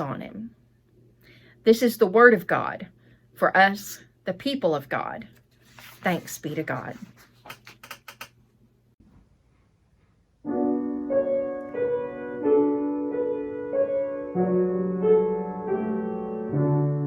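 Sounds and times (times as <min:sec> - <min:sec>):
piano playing block chords: 0:10.4 - 0:17.0.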